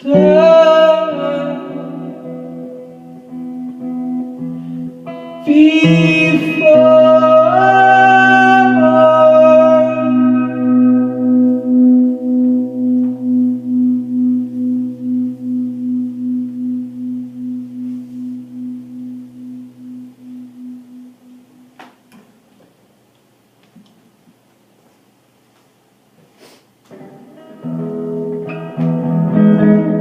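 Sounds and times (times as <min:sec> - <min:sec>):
low ringing note: 0:10.2 - 0:21.7.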